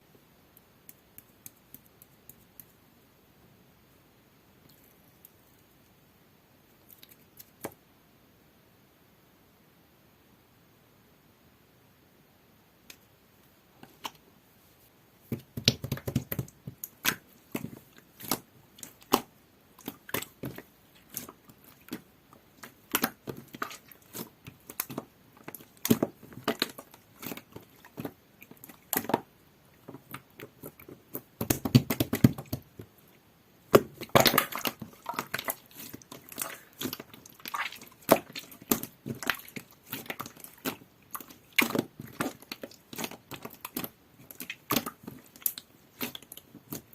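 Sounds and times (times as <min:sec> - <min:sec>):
slime squishing by hand: 0:15.2 - 0:46.9.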